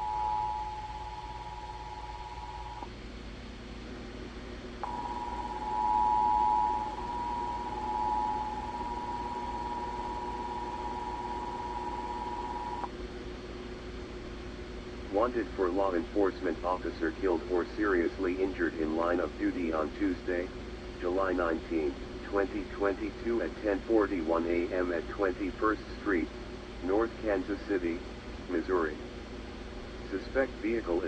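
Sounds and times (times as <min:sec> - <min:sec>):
two-tone attention signal: 0:00.0 - 0:02.9, 0:04.8 - 0:12.9
hissy background: 0:00.0 - 0:12.9, 0:14.4 - 0:31.0.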